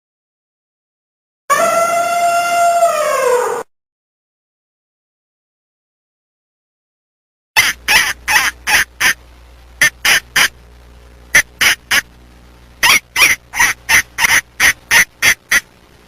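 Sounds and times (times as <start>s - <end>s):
waterfowl honking: 7.6s - 9.2s, 9.8s - 10.5s, 11.3s - 12.0s, 12.8s - 15.6s.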